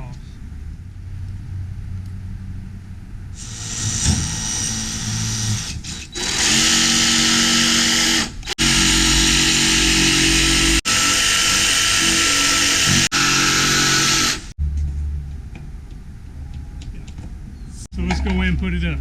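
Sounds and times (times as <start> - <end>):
power tool cutting wood: 3.4 - 14.6.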